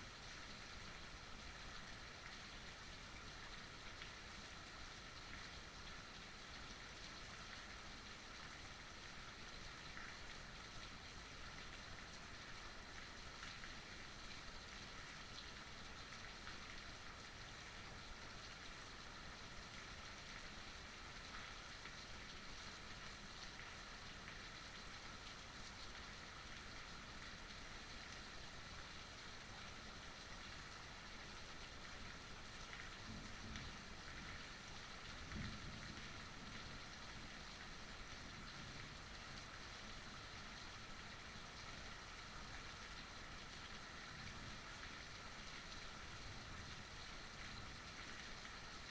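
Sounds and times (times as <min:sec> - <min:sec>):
heavy rainfall: 0:00.0 - 0:48.9
raindrops pattering on surface: 0:00.0 - 0:48.9.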